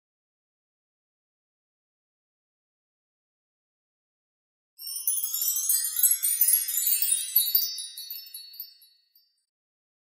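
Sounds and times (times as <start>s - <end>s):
tinkling bell chime jingle: 4.8s - 9.5s.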